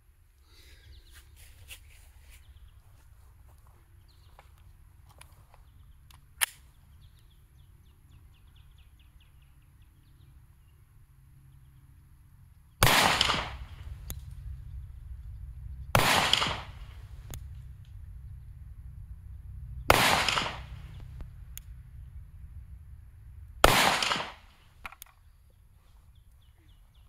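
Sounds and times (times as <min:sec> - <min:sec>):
sharp click: 0:06.1 - 0:06.7
gunshots with echo: 0:12.8 - 0:14.0, 0:15.9 - 0:17.0, 0:19.9 - 0:21.0, 0:23.6 - 0:24.6.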